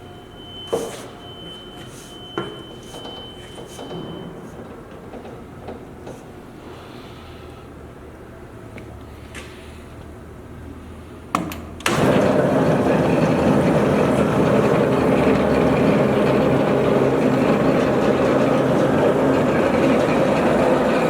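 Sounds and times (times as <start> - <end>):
bandsaw running: 11.9 - 21.0.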